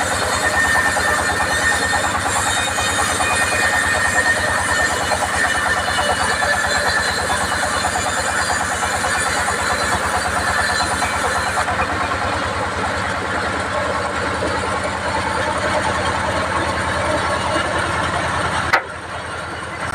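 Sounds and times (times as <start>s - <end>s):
bandsaw whirring: 0.0s - 18.9s
engine pulsing: 0.0s - 19.9s.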